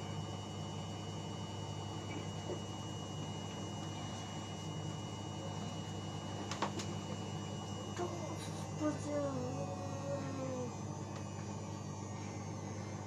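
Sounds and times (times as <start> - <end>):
washing machine motor hum: 0.0 - 13.0.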